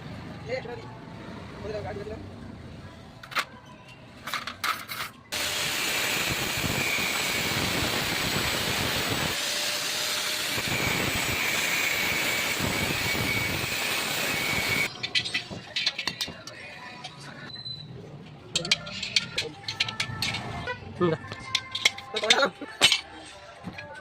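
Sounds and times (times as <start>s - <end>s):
loud hissing rush: 5.4s - 9.4s.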